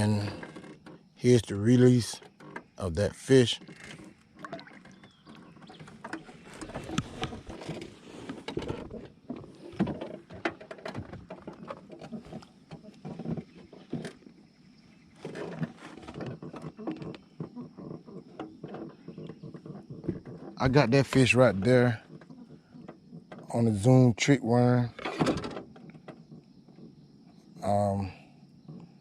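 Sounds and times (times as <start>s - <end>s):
knocks and taps in a boat: 15.3s - 23.7s.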